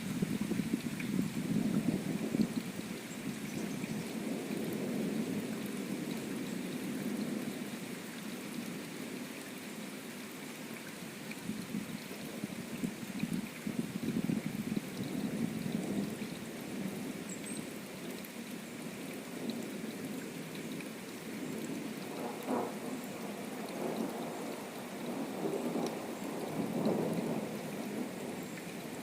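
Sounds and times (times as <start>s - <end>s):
steady rain: 0.0s - 29.0s
low rolling thunder: 22.1s - 23.0s.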